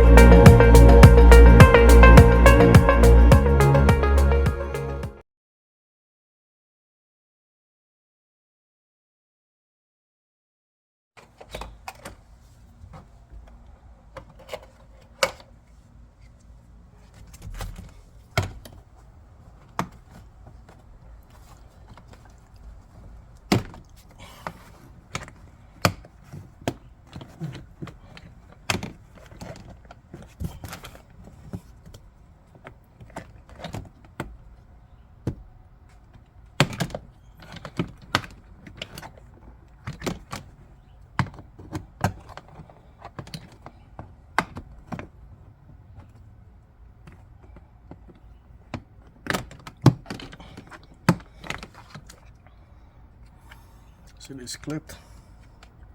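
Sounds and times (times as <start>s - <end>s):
hands handling plastic trim parts: 11.2s - 34.6s.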